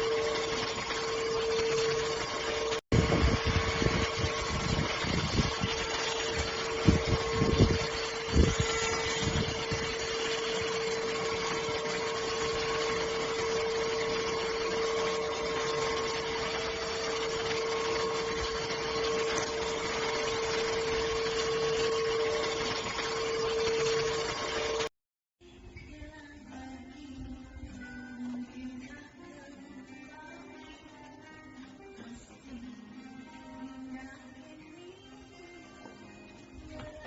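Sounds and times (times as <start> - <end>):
vacuum cleaner motor whining: 0.0 - 24.9.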